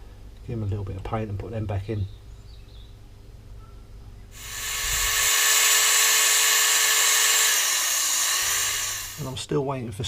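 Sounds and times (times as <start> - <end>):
rotary tool high-pitched whine: 4.4 - 9.4.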